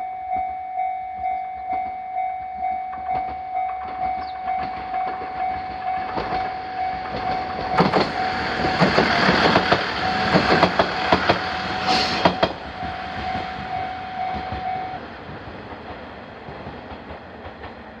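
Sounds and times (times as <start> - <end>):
crossing warning bell dinging: 0.0 - 15.4
train wheels clacking over rail joints: 3.0 - 18.0
high wheel squeal: 11.4 - 15.0.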